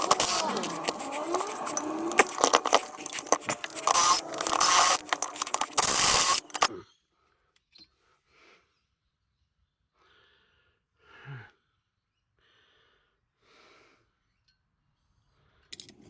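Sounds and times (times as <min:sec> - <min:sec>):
metal scraping and clinking: 0:00.0 - 0:06.7.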